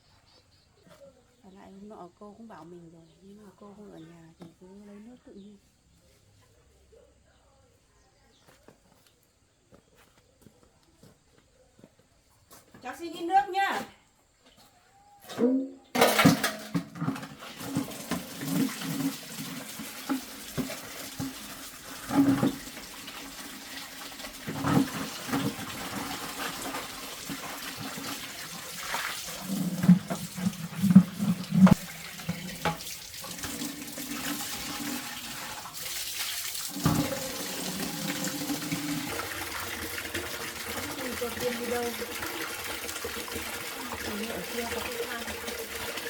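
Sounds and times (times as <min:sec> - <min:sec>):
bucket knocks and clunks: 0:15.2 - 0:46.0
tap water running into bucket: 0:16.0 - 0:46.0.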